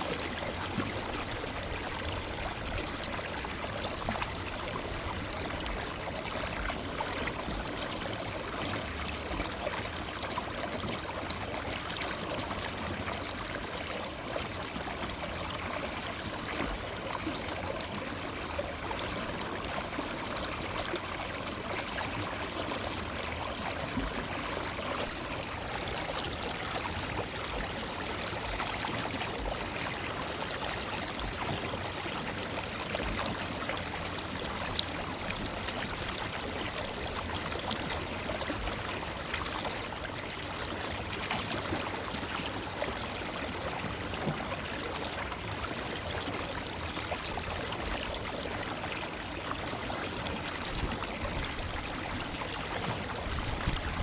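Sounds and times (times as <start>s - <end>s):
river flowing over rocks: 11.2s - 54.0s.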